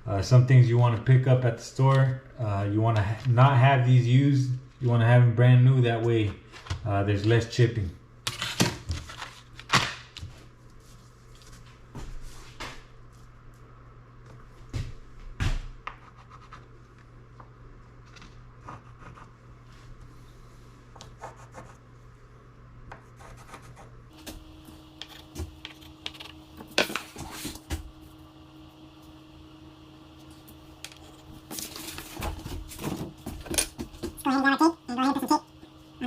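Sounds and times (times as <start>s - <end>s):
scratching and rubbing on countertop: 15.9s - 16.8s.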